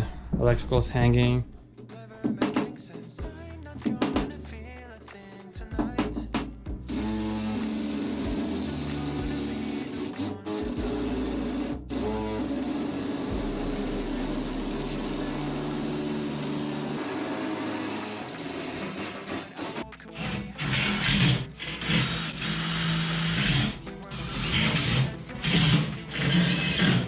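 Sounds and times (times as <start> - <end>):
power tool running: 6.9 - 27.0.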